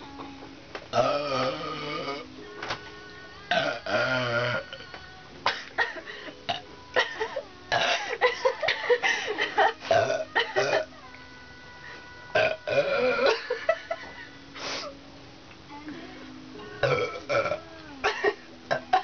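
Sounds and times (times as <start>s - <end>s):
people burping: 0.9s - 2.3s, 3.5s - 4.8s, 5.4s - 10.9s, 12.3s - 14.3s, 16.8s - 19.0s.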